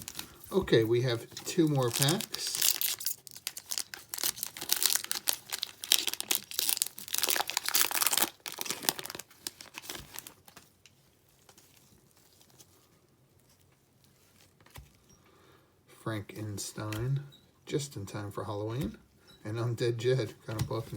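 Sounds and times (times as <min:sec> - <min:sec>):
wrapper tearing and crinkling: 0:00.0 - 0:00.5, 0:01.4 - 0:12.8.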